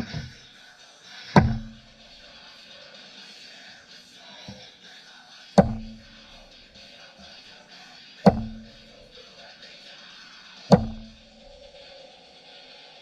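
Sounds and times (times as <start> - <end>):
heavy hammer blows on metal: 0.0 - 0.4, 1.3 - 2.1, 5.6 - 6.6, 8.2 - 9.1, 10.7 - 11.6
steady background hiss: 0.0 - 13.0.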